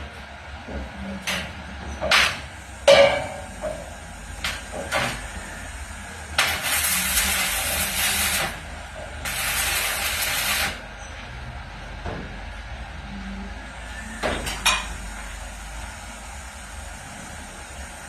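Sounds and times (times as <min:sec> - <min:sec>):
arc welding crackling: 0:00.8 - 0:10.9.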